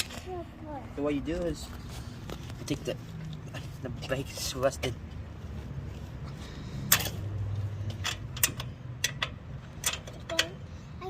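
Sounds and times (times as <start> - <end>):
metallic clicks and knocks: 6.8 - 10.6.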